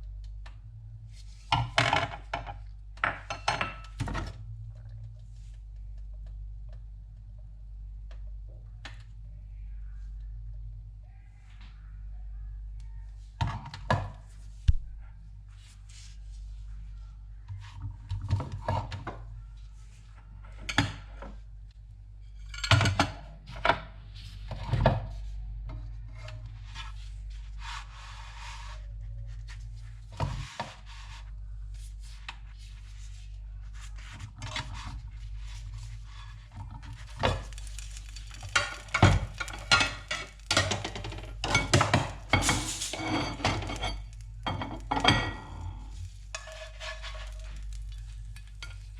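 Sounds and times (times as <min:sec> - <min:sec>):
steady low hum: 0:00.0 - 0:48.9
utensils knocking and scraping: 0:36.5 - 0:45.6.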